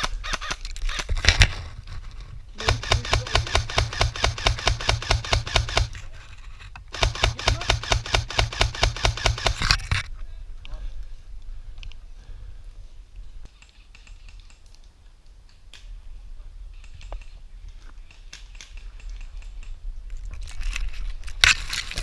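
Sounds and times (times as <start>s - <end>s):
airsoft rifle bursts: 0.0s - 1.1s, 2.6s - 6.0s, 6.9s - 9.8s.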